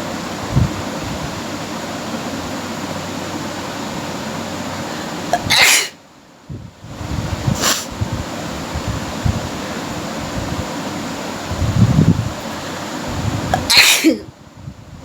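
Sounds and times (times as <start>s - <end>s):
steady background hiss: 0.0s - 15.0s
person sneezing: 5.4s - 6.0s, 7.6s - 7.9s, 13.6s - 14.2s.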